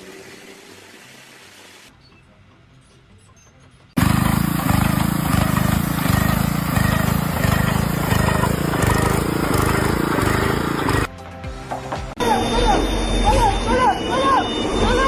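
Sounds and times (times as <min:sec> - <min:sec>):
engine-driven machine throbbing: 0:04.0 - 0:11.1.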